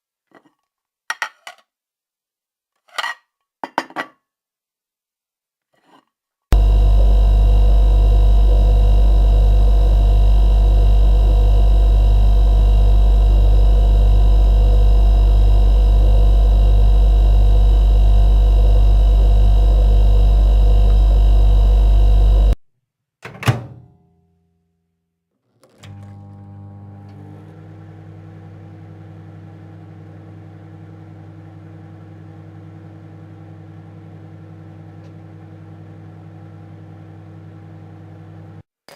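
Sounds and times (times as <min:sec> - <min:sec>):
kitchen appliance humming: 0:06.6 - 0:22.6, 0:25.8 - 0:38.6.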